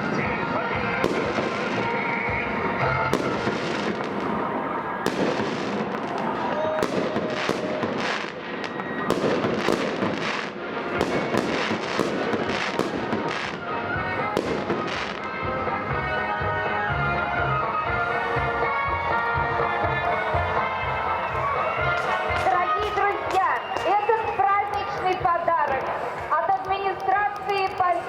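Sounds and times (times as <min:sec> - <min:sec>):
fireworks bangs: 0:00.0 - 0:15.4
music playing: 0:00.0 - 0:28.0.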